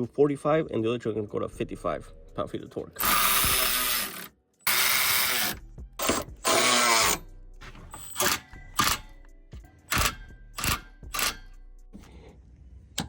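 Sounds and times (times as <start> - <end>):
power tool driving bolts: 3.0 - 7.2, 7.9 - 9.1, 9.9 - 11.4.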